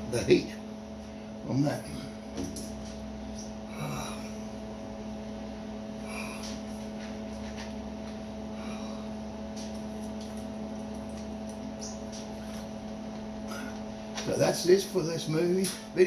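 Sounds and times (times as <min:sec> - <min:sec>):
electrical equipment hum: 0:00.0 - 0:16.0.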